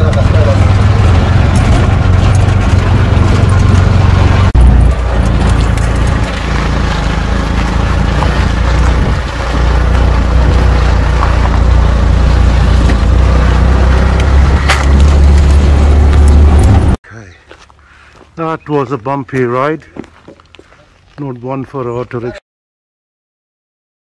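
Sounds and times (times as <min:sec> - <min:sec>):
car rumbling on bumpy road: 0:00.0 - 0:17.0
knocks and rattles: 0:00.0 - 0:17.0.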